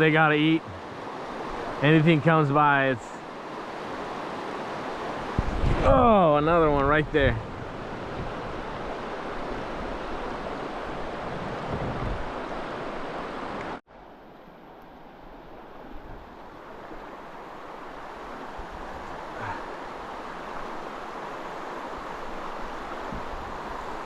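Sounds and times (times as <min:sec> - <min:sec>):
river water rushing: 0:00.0 - 0:24.0
wind buffeting microphone: 0:05.0 - 0:13.2.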